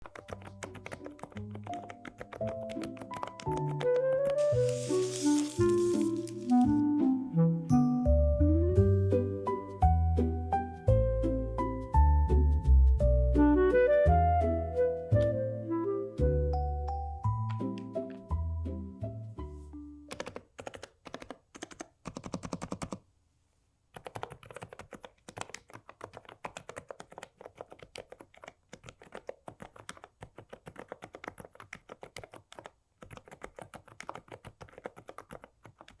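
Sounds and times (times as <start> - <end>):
soft keystrokes on keyboard: 0.0 - 6.7, 20.1 - 23.0, 23.9 - 36.0.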